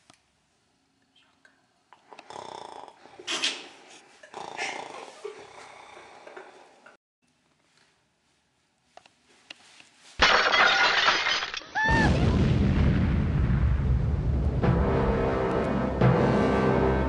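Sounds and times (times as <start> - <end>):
sudden loud crash: 11.9 - 16.7.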